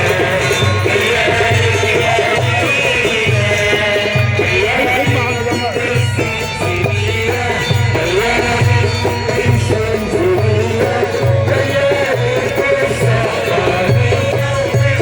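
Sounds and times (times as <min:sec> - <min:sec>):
folk band playing melody: 0:00.0 - 0:15.0.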